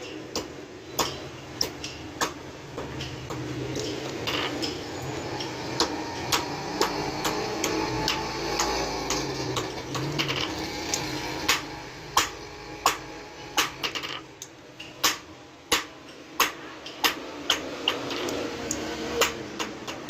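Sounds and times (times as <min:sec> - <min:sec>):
hammer striking metal: 0:11.4 - 0:13.9.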